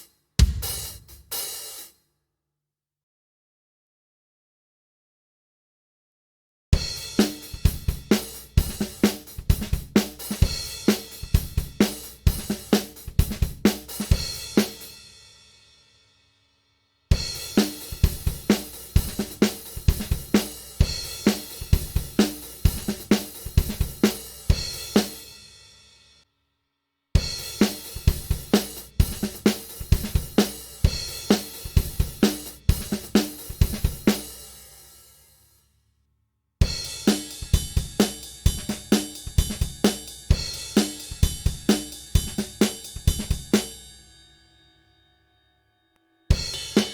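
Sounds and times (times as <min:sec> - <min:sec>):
acoustic drum kit grooves: 0:00.0 - 0:01.9, 0:06.8 - 0:15.1, 0:17.1 - 0:25.5, 0:27.2 - 0:35.2, 0:36.6 - 0:44.1, 0:46.3 - 0:46.9
cymbal ringing: 0:44.0 - 0:46.9.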